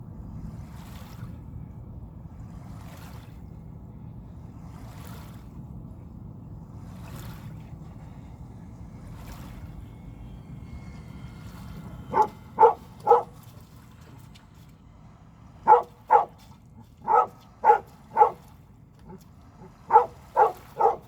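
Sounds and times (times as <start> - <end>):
low rush of wind or water: 0.0 - 21.0
dog barking: 12.1 - 13.4, 15.6 - 16.4, 17.0 - 18.5, 19.8 - 21.0.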